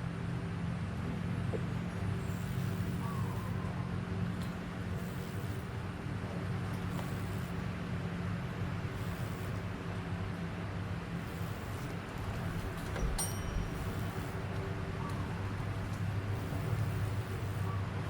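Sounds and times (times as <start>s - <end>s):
engine humming: 1.1s - 18.0s
metallic ding: 13.0s - 14.4s.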